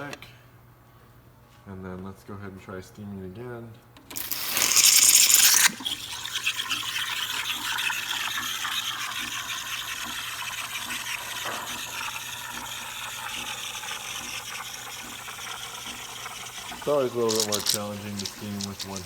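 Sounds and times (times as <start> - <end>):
steam wand hissing: 4.2 - 19.0.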